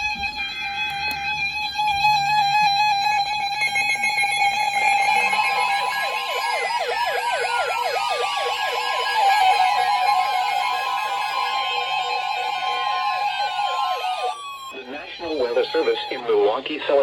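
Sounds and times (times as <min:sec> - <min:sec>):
siren-like warble: 0:02.1 - 0:17.0
steady warning alarm tone: 0:02.2 - 0:17.0
falling sweep tone: 0:04.0 - 0:16.5.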